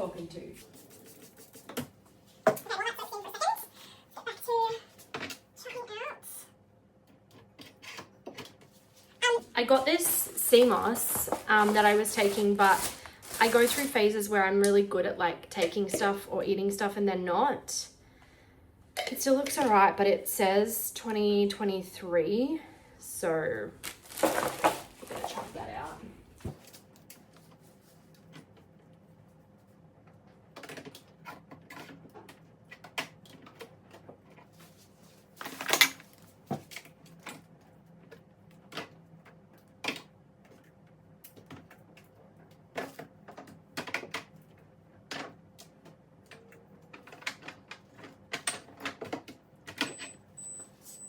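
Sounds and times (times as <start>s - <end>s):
faint steady hum: 8.6s - 30.6s.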